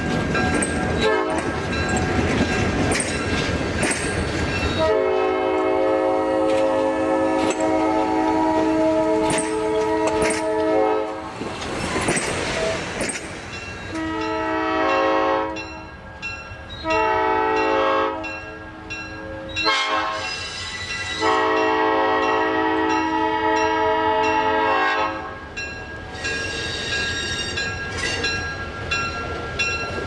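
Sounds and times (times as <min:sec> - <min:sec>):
locomotive air horn blasts: 0:01.0 - 0:01.6, 0:04.8 - 0:11.4, 0:13.9 - 0:15.8, 0:16.8 - 0:18.4, 0:19.2 - 0:20.4, 0:21.2 - 0:25.4.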